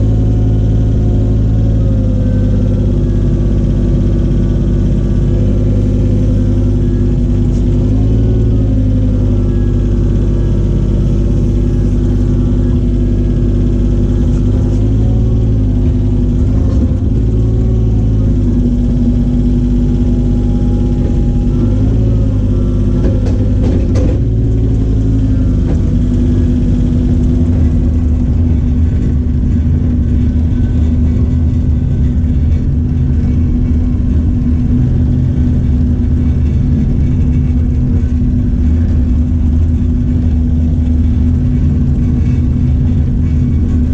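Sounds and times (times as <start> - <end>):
excavator diesel engine running: 0.0 - 43.9.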